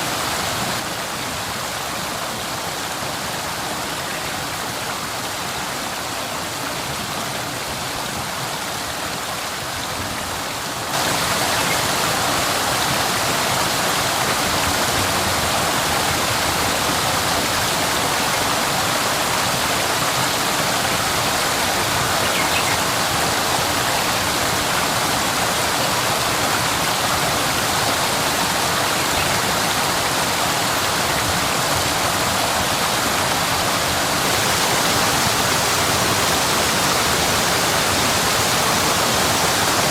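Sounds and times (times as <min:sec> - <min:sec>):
waterfall rushing: 0:11.0 - 0:14.2, 0:32.6 - 0:39.9.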